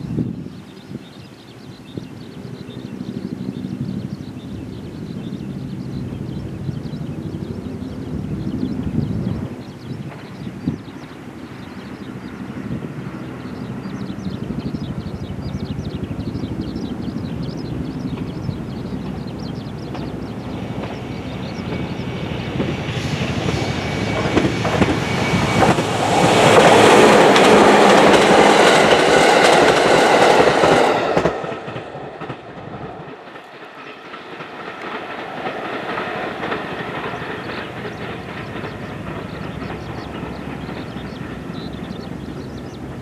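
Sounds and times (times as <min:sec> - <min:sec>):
electric train passing by: 0:00.0 - 0:43.0
wheels clacking over rail joints: 0:15.0 - 0:43.0.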